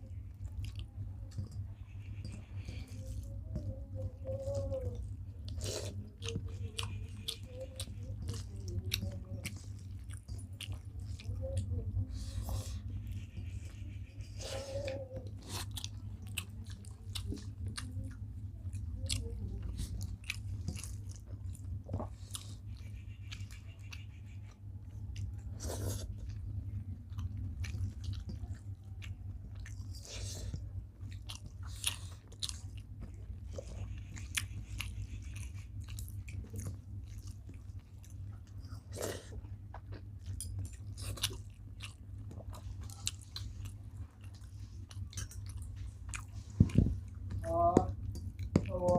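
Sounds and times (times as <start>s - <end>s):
low steady hum: 0.0s - 48.9s
people chewing food: 0.0s - 48.9s.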